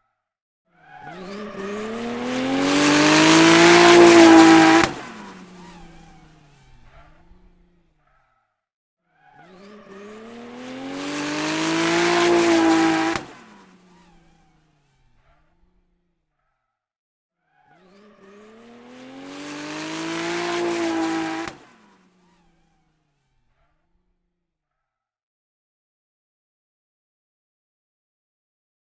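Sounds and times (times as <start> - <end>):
racing car passing by: 0.8 - 7.9, 9.2 - 15.7, 17.6 - 23.7.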